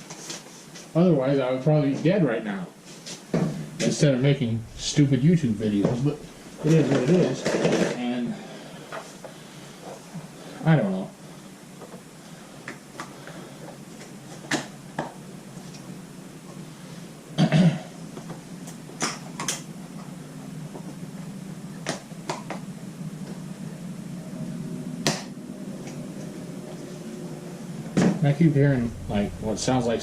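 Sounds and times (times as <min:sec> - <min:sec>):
steady low hum: 0:03.5 - 0:18.9, 0:19.7 - 0:30.0.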